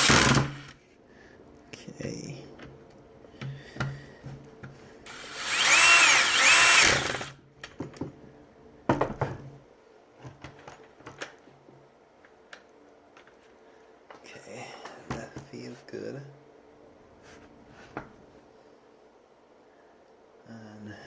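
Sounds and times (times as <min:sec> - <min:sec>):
power tool motor whining: 0:00.0 - 0:00.7, 0:05.1 - 0:07.4
clicks and handling of parts: 0:12.2 - 0:14.2.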